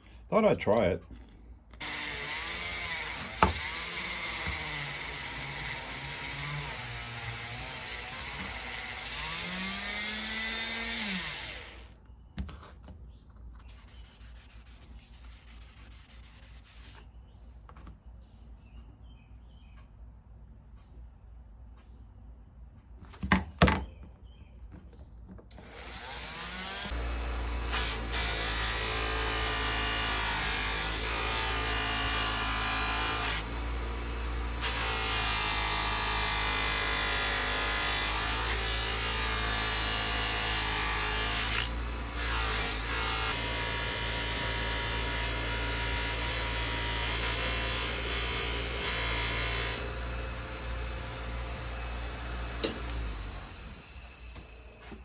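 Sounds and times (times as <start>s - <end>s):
rotary tool polishing metal: 1.8s - 11.8s, 13.7s - 17.0s, 25.6s - 53.9s.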